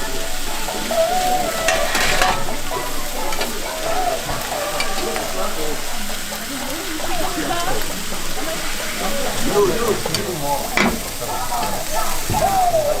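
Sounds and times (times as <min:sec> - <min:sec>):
steak sizzling on a griddle: 0:00.0 - 0:13.0.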